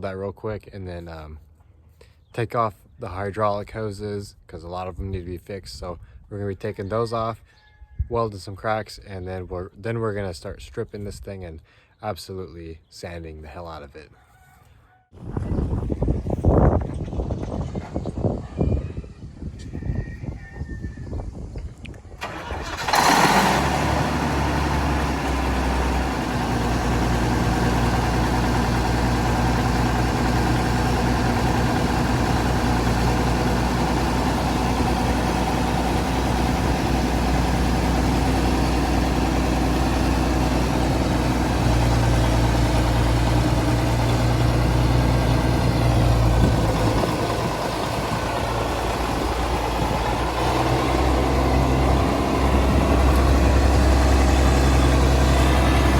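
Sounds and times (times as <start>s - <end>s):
tractor diesel engine idling: 22.2s - 55.9s.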